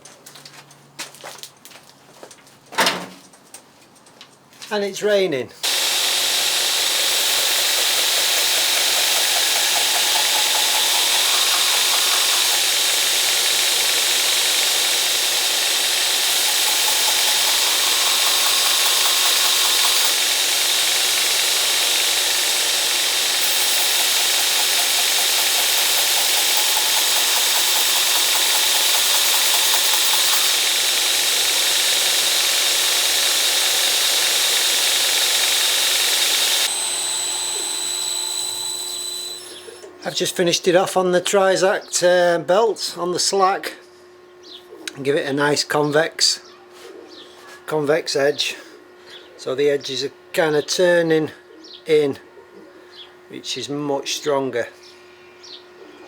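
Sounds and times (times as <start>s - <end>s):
belt grinder grinding steel: 5.6s - 39.9s.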